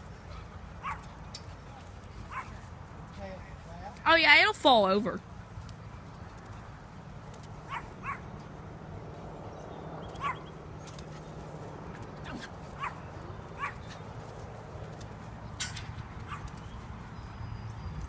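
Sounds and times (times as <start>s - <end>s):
dog whimpering yips: 10.2s - 10.5s.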